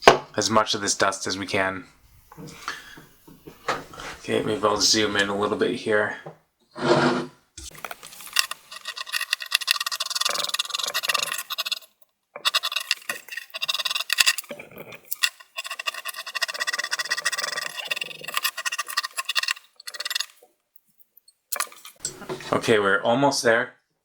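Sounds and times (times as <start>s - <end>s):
plastic tool scraping metal fins: 6.8s - 20.4s, 21.5s - 22.6s.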